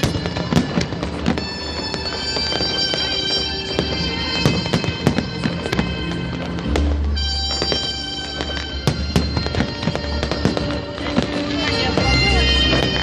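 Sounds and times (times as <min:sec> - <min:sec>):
fireworks bangs and crackles: 0:00.0 - 0:13.0
music with long held tones: 0:00.0 - 0:13.0.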